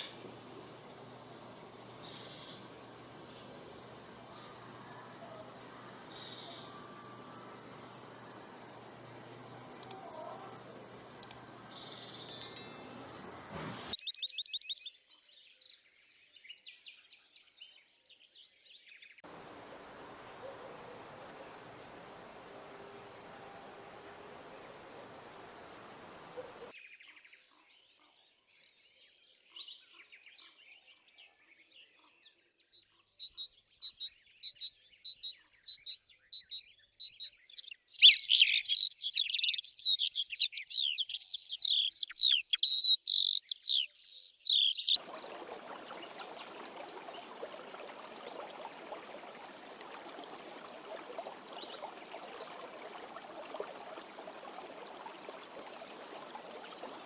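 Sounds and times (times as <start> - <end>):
songbirds singing: 0.0 - 57.0
stream rushing: 19.2 - 26.7, 45.0 - 57.0.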